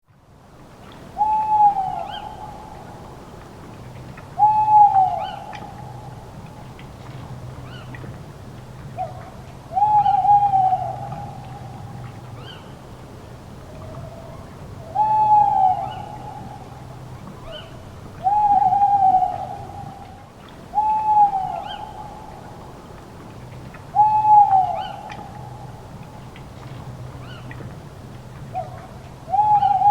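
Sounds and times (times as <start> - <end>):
low steady hum: 0.1 - 29.9
owl hooting: 1.2 - 2.6, 4.4 - 6.0, 9.7 - 12.6, 14.8 - 16.7, 17.5 - 20.1, 20.8 - 22.2, 24.0 - 25.4, 28.6 - 29.9.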